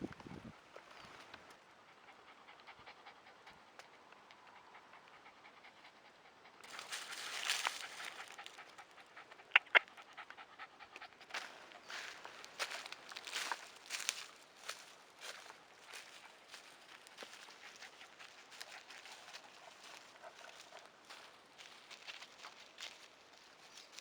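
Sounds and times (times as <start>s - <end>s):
dog panting: 1.9s - 23.1s.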